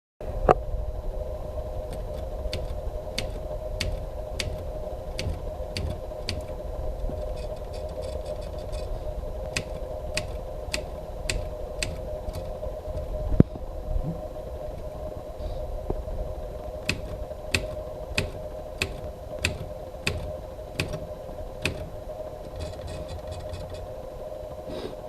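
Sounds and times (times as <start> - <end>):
typewriter keystroke clacks: 1.9 - 8.9, 9.5 - 12.5, 16.9 - 21.9, 22.5 - 23.8.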